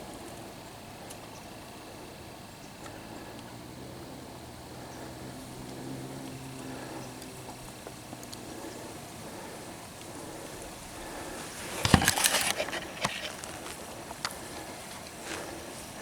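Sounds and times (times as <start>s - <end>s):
background hiss: 0.0s - 16.0s
faint clicks: 5.0s - 9.0s
crackling and rustling: 7.6s - 16.0s.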